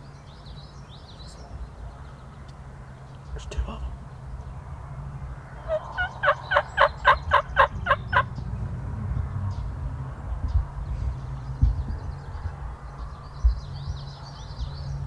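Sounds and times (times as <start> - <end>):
turkey calling: 5.6 - 8.3.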